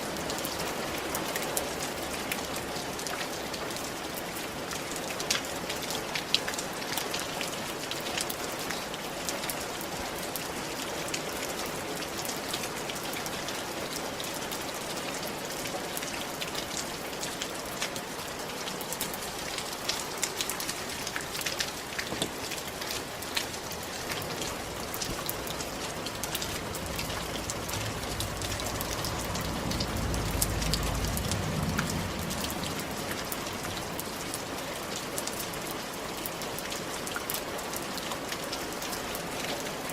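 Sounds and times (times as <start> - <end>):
rain falling: 0.0 - 39.9
raindrops clicking on hard surface: 19.0 - 37.5
low rumble: 25.4 - 34.3.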